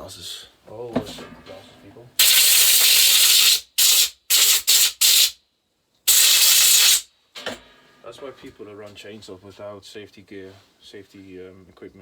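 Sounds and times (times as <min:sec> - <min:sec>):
compressed air blow gun hissing: 0:02.2 - 0:05.4, 0:06.1 - 0:07.1.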